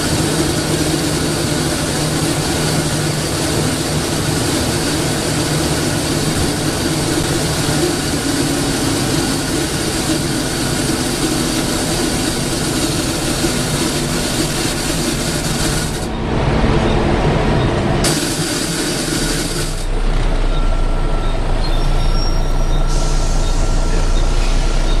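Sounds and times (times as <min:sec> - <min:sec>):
bus engine and road rumble: 0:00.0 - 0:25.0
loud hiss: 0:18.0 - 0:19.9.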